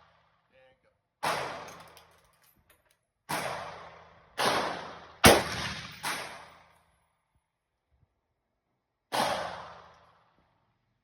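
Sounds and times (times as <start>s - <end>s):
rifle shots echoing: 3.3s - 6.6s.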